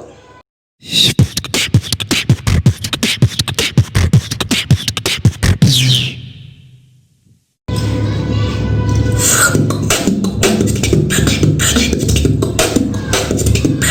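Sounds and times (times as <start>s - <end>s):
human beatboxing: 0.8s - 6.2s, 9.2s - 13.9s
falling sweep: 5.4s - 6.9s.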